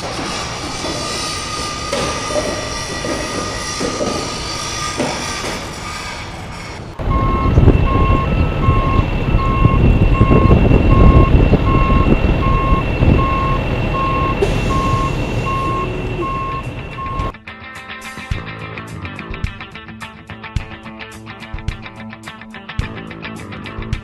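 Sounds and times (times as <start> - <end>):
heavy engine rumbling: 0.0 - 17.3
steady vehicle noise: 0.0 - 17.3
reversing alarm beeping: 1.3 - 4.0, 7.0 - 17.3.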